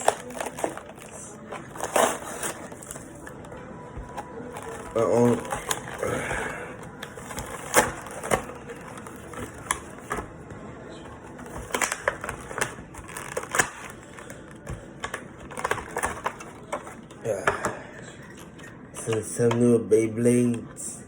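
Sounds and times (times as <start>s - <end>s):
box clicks and knocks: 7.1s - 10.3s.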